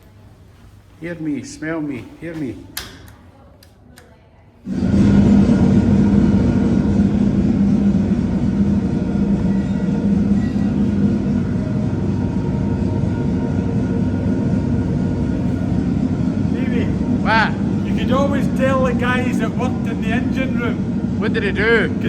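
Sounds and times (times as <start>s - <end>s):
ship engine drone: 4.6s - 22.0s.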